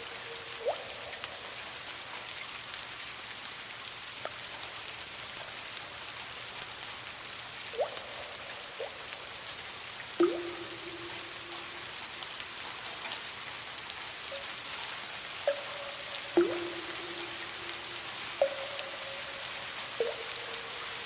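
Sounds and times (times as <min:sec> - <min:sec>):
water drops plinking: 0:00.0 - 0:01.8, 0:07.7 - 0:09.3, 0:10.2 - 0:12.5, 0:15.4 - 0:21.0
soft rain hissing: 0:00.0 - 0:21.0.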